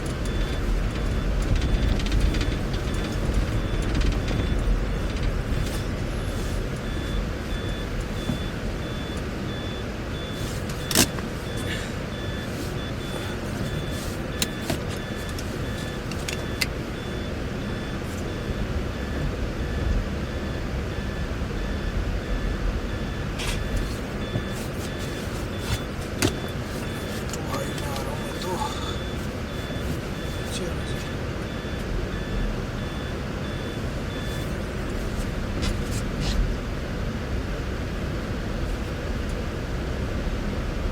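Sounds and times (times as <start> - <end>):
engine and road noise in cabin: 0.0 - 40.9
faint electronic beep: 11.5 - 34.6.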